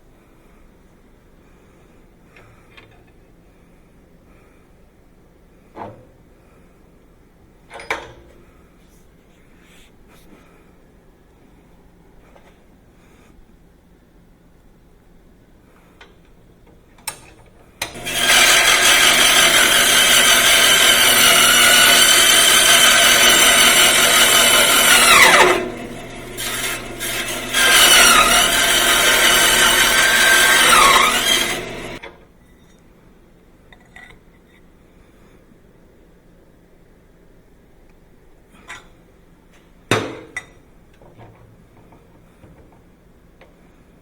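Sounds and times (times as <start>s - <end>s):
power tool whine: 17.9s - 32.0s.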